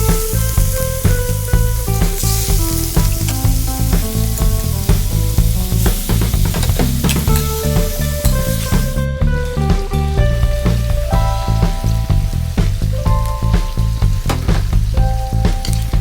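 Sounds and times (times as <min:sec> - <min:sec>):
food sizzling in a pan: 0:00.0 - 0:09.0
background music with pulsing bass: 0:00.0 - 0:16.0.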